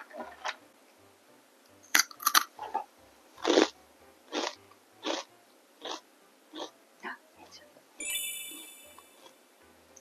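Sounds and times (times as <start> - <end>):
crunchy food chewing: 3.4 - 6.7.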